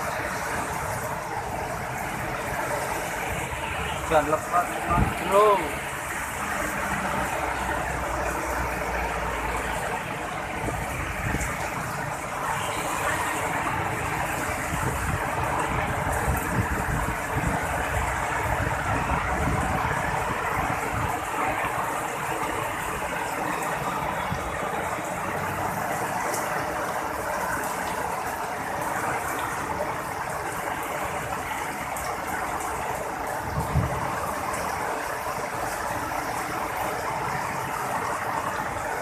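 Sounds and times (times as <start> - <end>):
heavy rain pouring: 0.0 - 39.0
wind gusting on microphone: 4.7 - 5.4, 10.3 - 12.2, 13.0 - 23.4, 32.9 - 35.4.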